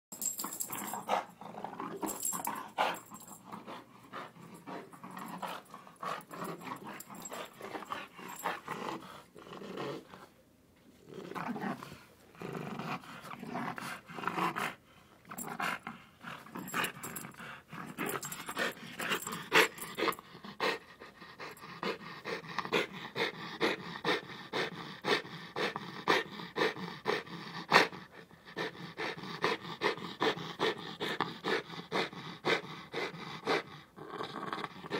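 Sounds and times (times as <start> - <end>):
dog growling and grumbling: 0.3 - 10.4, 11.0 - 34.9
dog panting: 2.1 - 9.4, 15.6 - 33.9.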